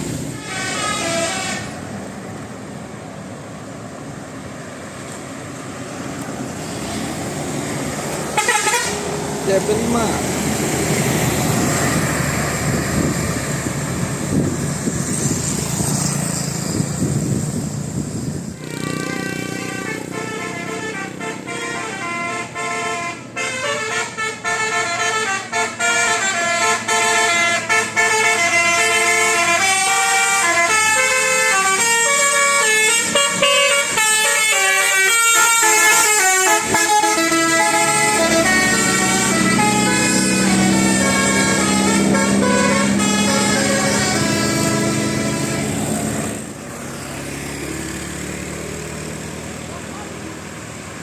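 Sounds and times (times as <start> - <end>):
bus melody horn playing a tune: 0.0 - 1.9, 8.2 - 9.2, 18.5 - 46.4.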